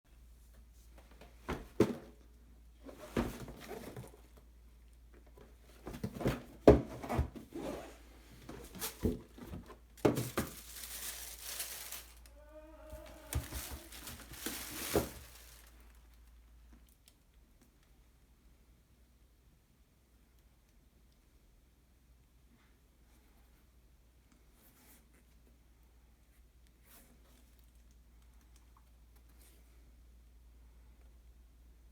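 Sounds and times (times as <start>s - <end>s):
cardboard box knocks and thumps: 1.4s - 2.2s, 2.9s - 4.2s, 5.7s - 10.9s, 13.0s - 15.7s
paper crinkling: 8.6s - 16.3s.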